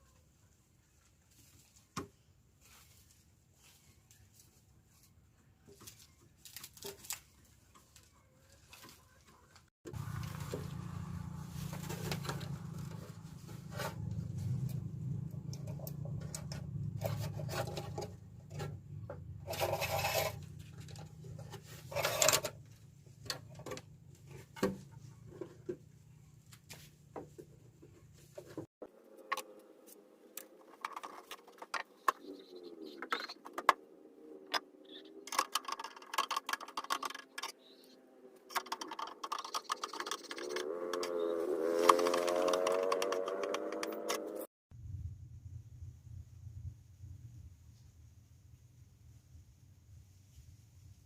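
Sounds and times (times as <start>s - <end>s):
small parts clicking and scraping: 11.7s - 24.4s, 29.2s - 33.8s, 34.5s - 44.5s.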